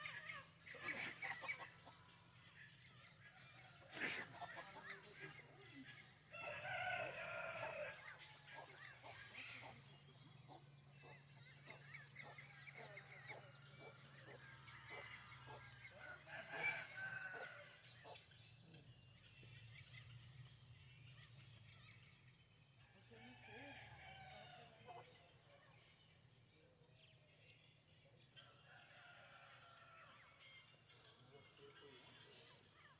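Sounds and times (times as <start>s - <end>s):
faint chicken and bird calls: 0.0s - 32.9s
rooster crowing: 6.3s - 8.0s, 16.0s - 17.8s.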